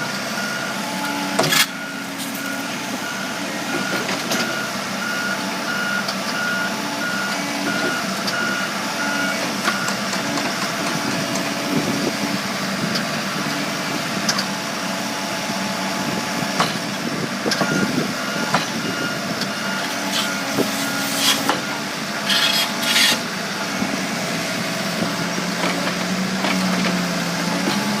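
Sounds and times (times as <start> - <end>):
diesel engine humming: 0.0 - 28.0.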